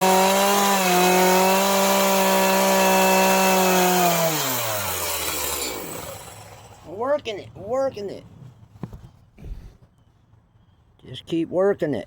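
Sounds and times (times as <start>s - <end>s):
power tool cutting wood: 0.0s - 6.9s.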